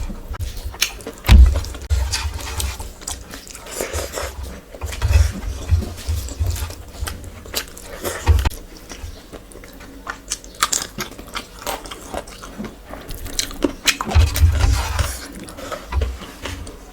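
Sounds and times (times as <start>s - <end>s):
person chewing food: 0.0s - 16.9s
low thuds: 1.3s - 2.2s.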